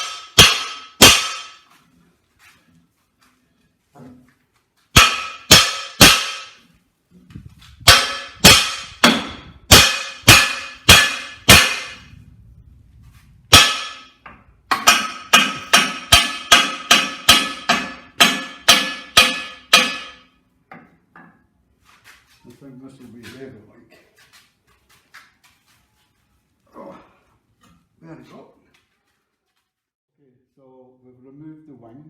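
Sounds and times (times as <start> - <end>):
hammer ringing on steel: 0.0 - 1.7, 5.0 - 6.6, 7.8 - 12.1, 13.5 - 20.4.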